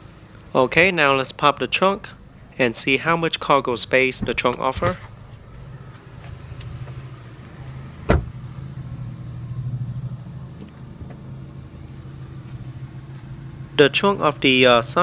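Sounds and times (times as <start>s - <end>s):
car idling hum: 0.0s - 15.0s
trunk latch click: 4.2s - 5.2s, 8.0s - 8.3s, 10.5s - 11.3s.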